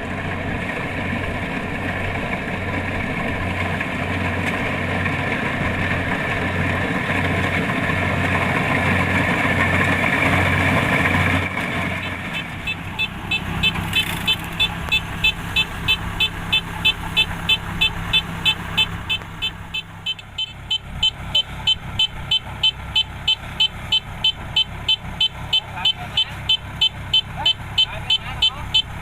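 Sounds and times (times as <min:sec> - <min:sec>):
diesel engine running: 0:00.0 - 0:29.0
short high warning beeps: 0:12.0 - 0:29.0.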